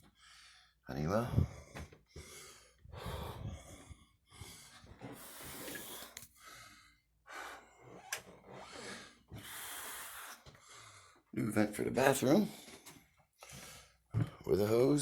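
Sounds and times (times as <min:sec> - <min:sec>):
person breathing: 0:00.1 - 0:08.0, 0:08.6 - 0:11.2, 0:13.4 - 0:14.0.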